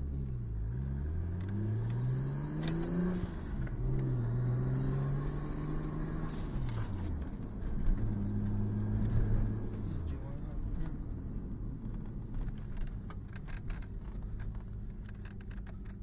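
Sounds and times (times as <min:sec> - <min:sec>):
car engine revving: 0:00.2 - 0:11.6.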